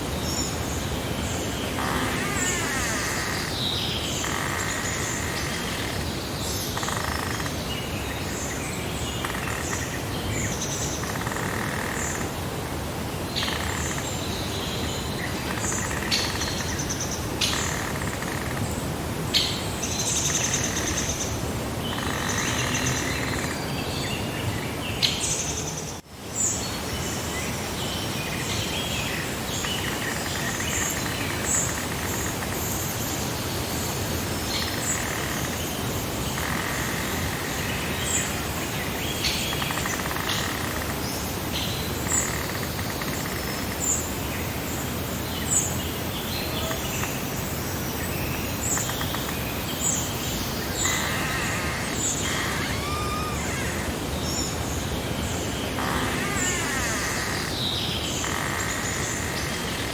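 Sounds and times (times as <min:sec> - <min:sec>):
steady background noise: 0:00.0 - 0:59.9
birds chirping and calling: 0:01.3 - 0:07.6, 0:48.5 - 0:59.9.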